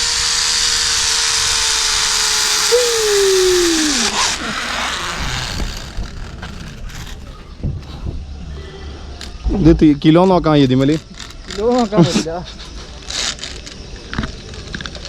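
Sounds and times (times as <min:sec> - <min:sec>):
machine motor spinning down: 0:00.0 - 0:07.6.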